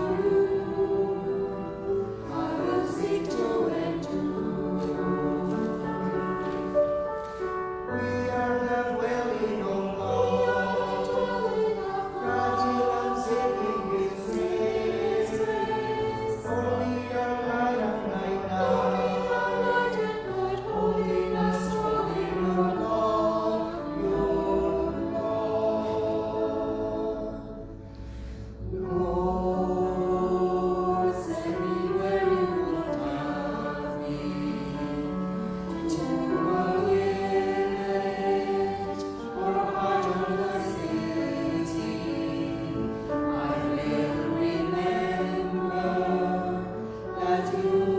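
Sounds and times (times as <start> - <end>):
group singing a hymn: 0.0 - 47.9.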